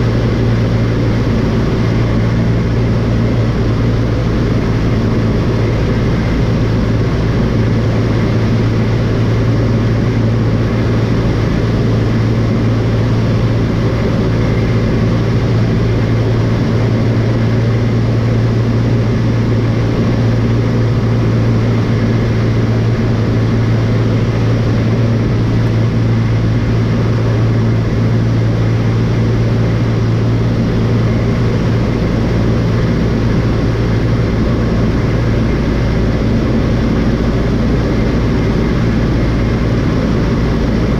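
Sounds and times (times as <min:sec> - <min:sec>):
airplane engine and propeller drone: 0:00.0 - 0:40.9.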